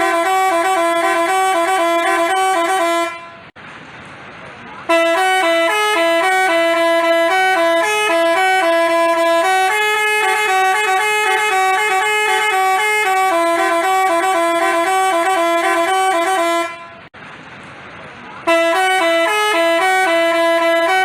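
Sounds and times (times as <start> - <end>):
multi-tone bus horn playing a tune: 0.0 - 3.6, 4.8 - 17.1, 18.4 - 21.0.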